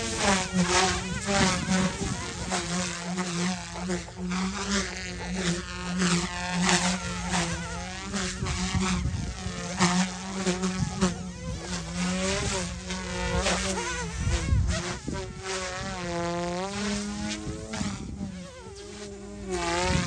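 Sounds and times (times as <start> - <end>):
helicopter motor buzzing: 0.0 - 20.0
steady low hum: 0.0 - 20.0.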